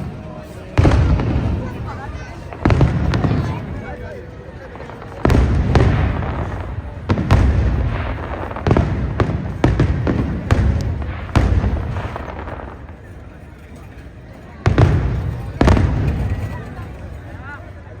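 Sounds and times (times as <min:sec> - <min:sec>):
aerial fireworks bangs: 0:00.0 - 0:04.0, 0:04.8 - 0:13.3, 0:14.6 - 0:16.8.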